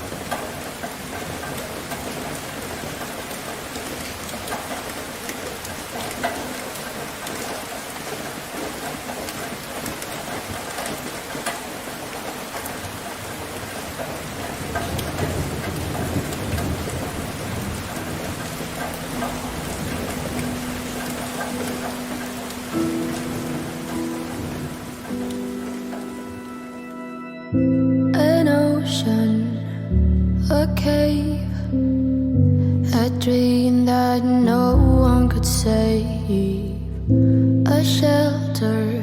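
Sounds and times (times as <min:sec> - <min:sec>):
low rumble of thunder: 0:00.0 - 0:26.5
steady rain falling: 0:00.0 - 0:39.0.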